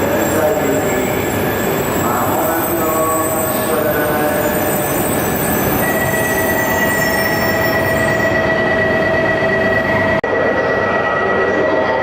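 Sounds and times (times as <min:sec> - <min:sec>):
train whining tones: 0:00.0 - 0:12.0.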